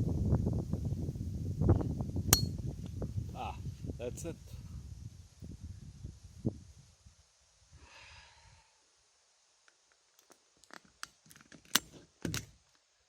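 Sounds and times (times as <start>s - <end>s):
wind buffeting microphone: 0.0s - 7.0s.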